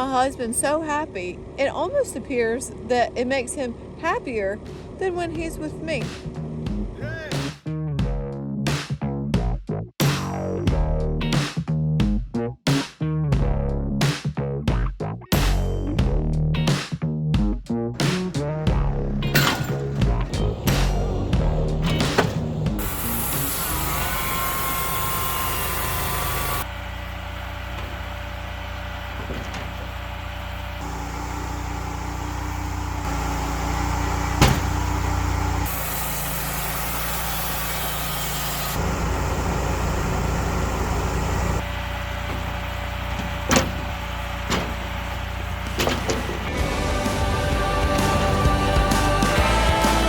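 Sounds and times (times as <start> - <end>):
machinery engine running: 0.0 - 7.1, 18.8 - 50.0.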